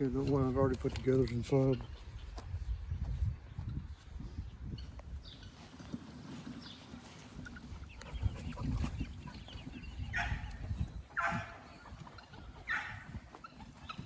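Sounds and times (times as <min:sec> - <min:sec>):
chickens clucking: 0:00.0 - 0:02.5, 0:04.7 - 0:14.0
low rumble on microphone: 0:01.9 - 0:05.5
chicken squawks: 0:07.5 - 0:14.0.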